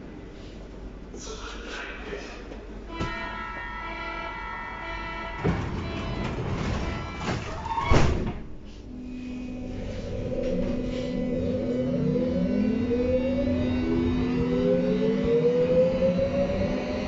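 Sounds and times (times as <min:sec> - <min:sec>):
train motors humming: 0:02.5 - 0:07.7, 0:08.6 - 0:17.0
door warning tone: 0:02.9 - 0:08.3, 0:08.9 - 0:17.0
sliding train door squealing and thumping: 0:05.3 - 0:08.5.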